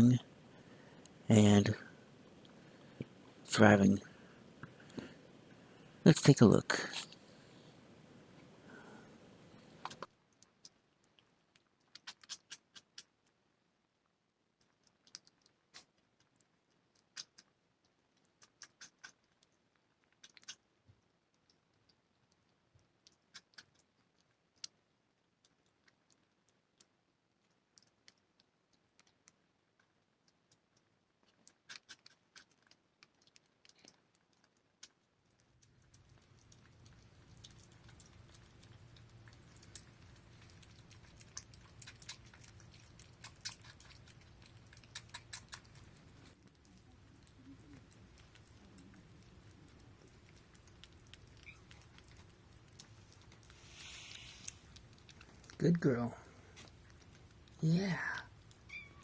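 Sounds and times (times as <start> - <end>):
low steady hum: 0.0 - 11.9, 32.6 - 59.0
kittens eating: 0.0 - 59.0.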